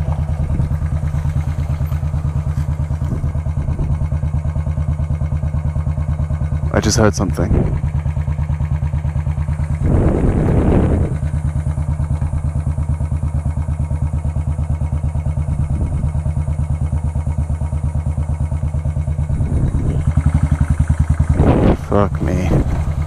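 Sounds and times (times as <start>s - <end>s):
motorcycle engine idling: 0.0s - 23.0s.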